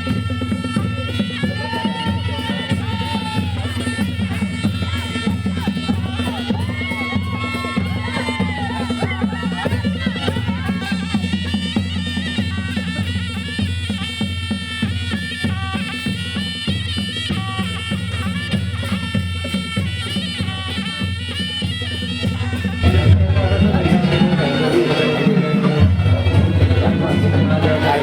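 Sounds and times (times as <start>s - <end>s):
melody over drumming: 22.5s - 28.0s.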